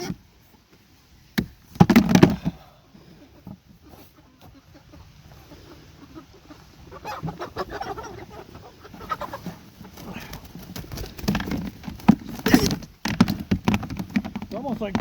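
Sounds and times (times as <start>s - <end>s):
chickens clucking and squawking: 2.4s - 13.1s.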